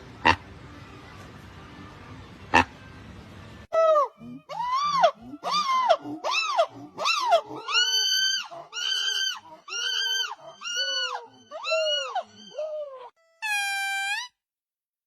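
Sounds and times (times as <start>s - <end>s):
monkey calling: 3.7s - 14.3s.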